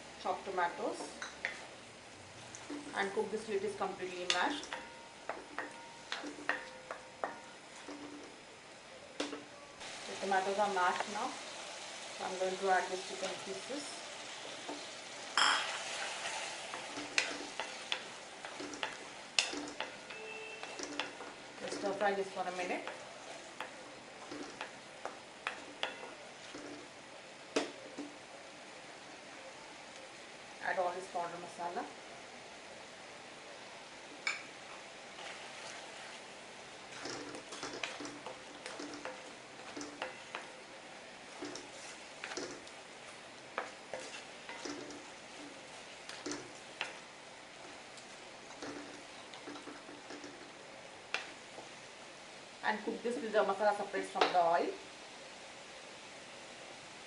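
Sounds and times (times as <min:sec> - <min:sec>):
chicken sizzling in a pan: 0:09.3 - 0:29.0, 0:33.4 - 0:57.0
chicken sizzling in oil: 0:09.8 - 0:28.7.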